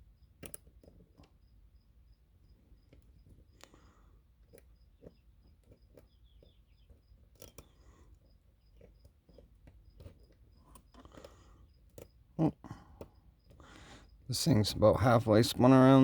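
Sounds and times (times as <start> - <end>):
lock pick clicks: 0.4 - 1.0, 4.5 - 7.8.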